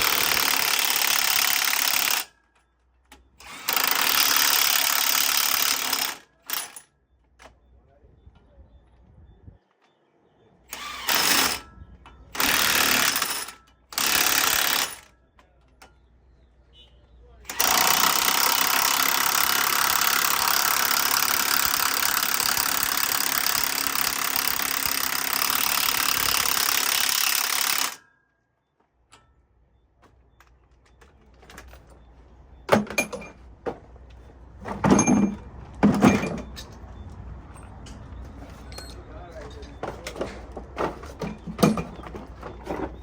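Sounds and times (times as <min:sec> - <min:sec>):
loud steady mechanical noise: 0:10.7 - 0:15.2, 0:17.4 - 0:28.1.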